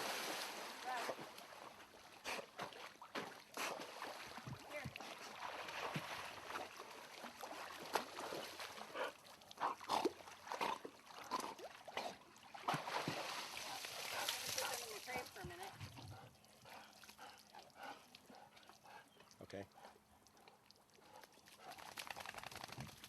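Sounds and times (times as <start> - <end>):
water splashing in a pool: 0.0 - 18.1, 20.2 - 23.0
short water slaps and clicks: 20.2 - 23.0.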